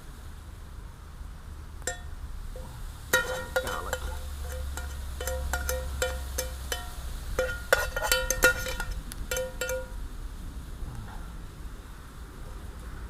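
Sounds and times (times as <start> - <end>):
metal utensil clinking on pan: 1.9 - 2.1, 3.1 - 10.0.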